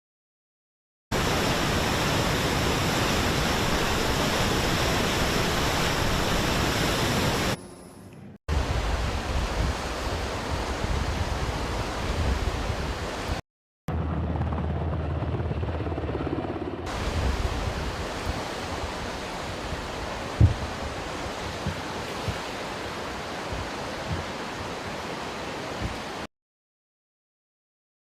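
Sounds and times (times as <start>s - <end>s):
steady rushing noise: 16.8s - 26.3s
thump: 20.4s - 20.6s.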